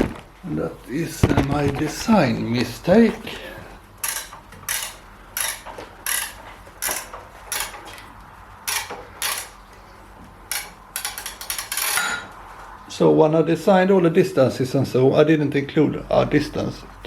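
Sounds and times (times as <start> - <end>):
metal parts clinking and knocking: 4.0 - 8.0, 8.7 - 9.6, 10.5 - 12.3.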